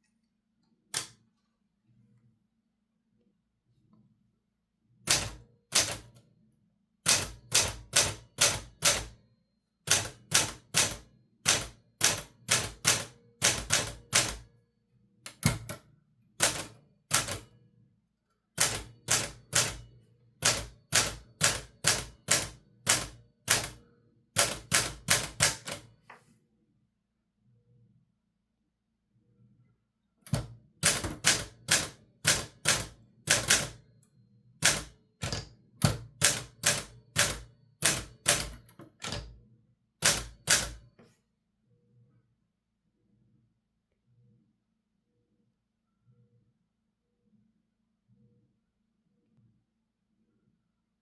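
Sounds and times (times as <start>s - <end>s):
typewriter keys clacking: 34.6s - 39.3s.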